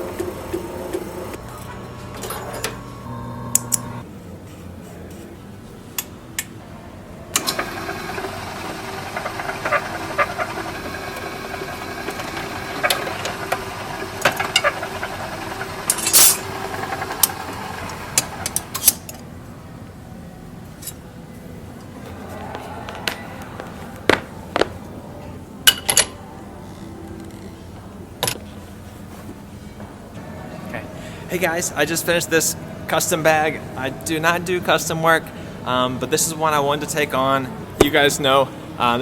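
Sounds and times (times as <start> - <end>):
steady hum: 0.0 - 39.0
sewing machine stitching: 7.4 - 18.5.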